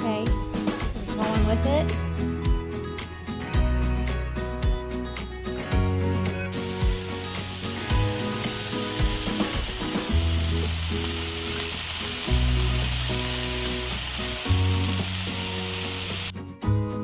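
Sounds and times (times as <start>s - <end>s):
background music: 0.0s - 17.0s
food sizzling in frying pan: 6.5s - 16.3s.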